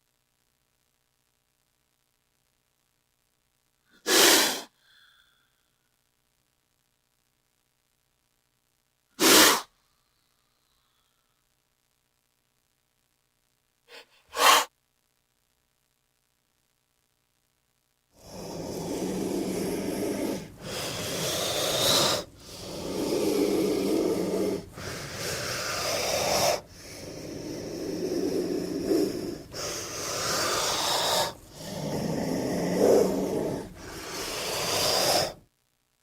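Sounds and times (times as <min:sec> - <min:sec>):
snake hissing: 0:04.0 - 0:04.8, 0:09.2 - 0:09.7, 0:13.9 - 0:14.7, 0:18.2 - 0:35.4.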